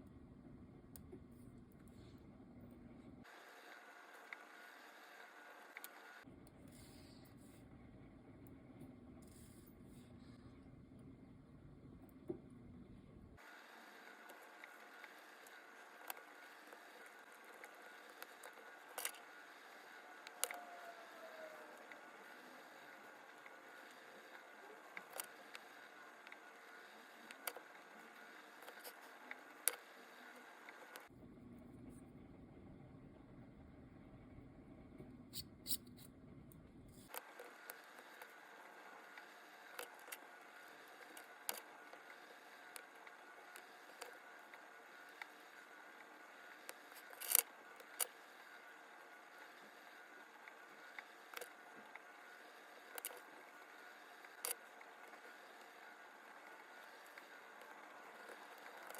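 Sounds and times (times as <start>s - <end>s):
tweezers and screwdriver clicking: 35.3s - 36.1s.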